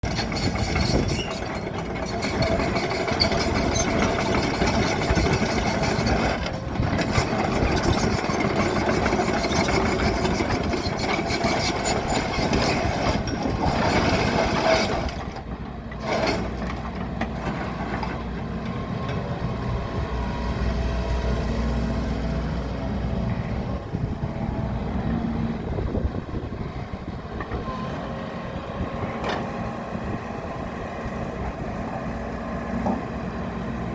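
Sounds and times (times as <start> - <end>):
excavator diesel engine running: 0.0 - 33.9.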